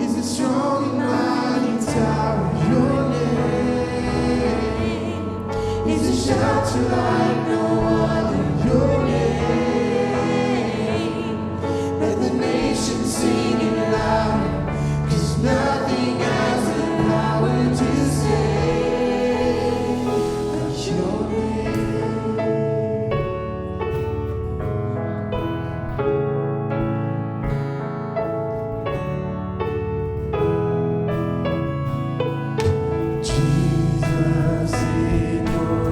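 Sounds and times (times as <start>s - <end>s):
group singing a worship song: 0.0s - 24.0s, 32.6s - 35.9s
instrumental accompaniment: 0.0s - 35.9s.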